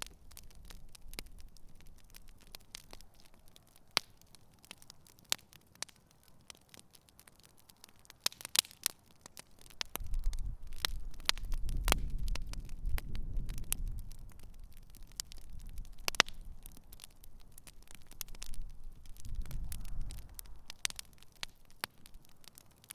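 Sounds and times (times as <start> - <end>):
campfire crackling and popping: 0.0 - 22.9.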